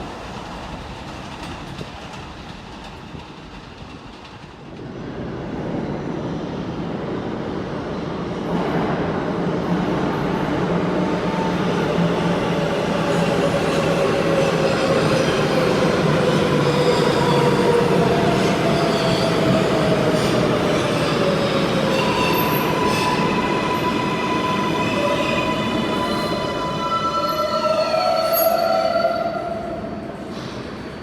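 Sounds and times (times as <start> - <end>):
subway train rumbling on rails: 0.0 - 31.0
train whining tones: 11.1 - 30.5.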